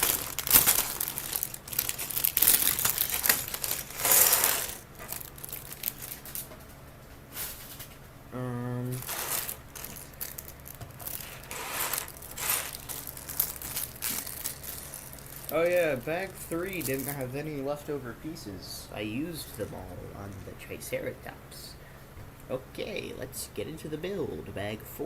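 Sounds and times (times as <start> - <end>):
plastic bag crinkling: 0.0 - 6.6, 8.9 - 17.8
man humming: 8.3 - 9.1.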